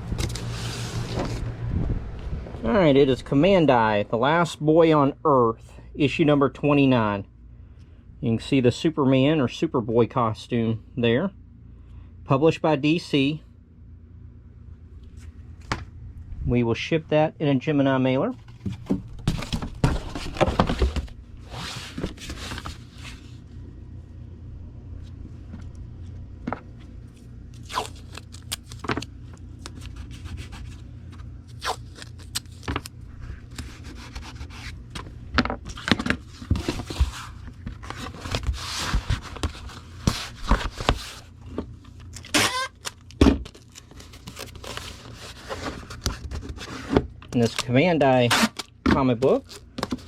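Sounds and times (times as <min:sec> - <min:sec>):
cardboard scraping and rubbing: 0:00.0 - 0:01.6, 0:18.4 - 0:23.4, 0:29.7 - 0:41.5, 0:44.0 - 0:47.2
steady low hum: 0:00.0 - 0:50.0.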